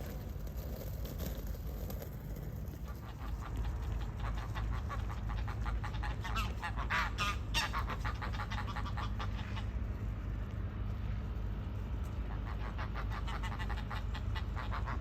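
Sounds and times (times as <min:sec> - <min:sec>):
steady low rumble: 0:00.0 - 0:15.0
waterfowl quacking calls: 0:02.8 - 0:09.8, 0:12.2 - 0:15.0.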